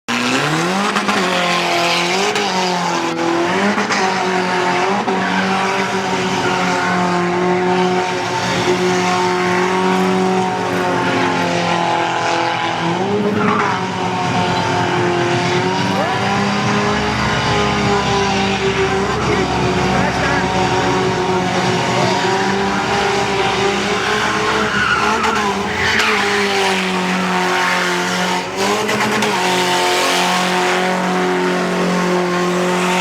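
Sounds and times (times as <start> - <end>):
car engine revving: 0.1 - 33.0
tyres squealing: 13.0 - 33.0.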